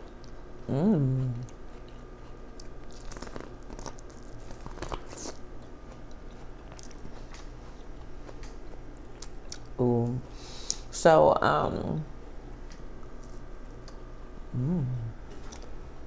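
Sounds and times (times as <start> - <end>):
person chewing food: 0.0 - 10.9, 12.5 - 14.1, 15.2 - 15.9
person humming: 0.6 - 1.5, 14.4 - 15.2.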